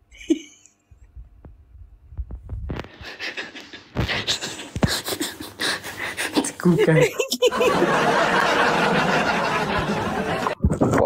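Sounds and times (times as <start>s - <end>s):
rustling and scraping on microphone: 1.0s - 5.0s
low thumps and clicks: 1.1s - 3.0s.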